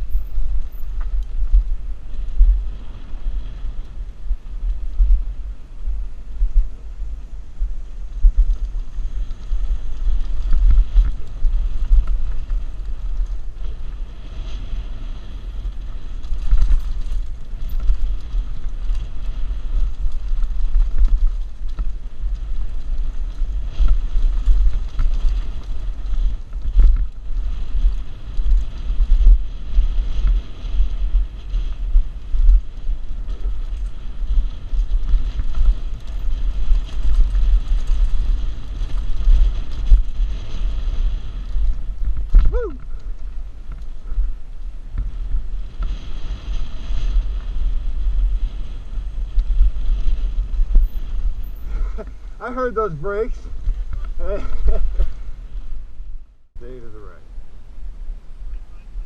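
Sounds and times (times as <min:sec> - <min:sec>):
wind buffeting microphone: 0:00.0 - 0:59.0
bike knocks and rattles: 0:07.6 - 0:52.2.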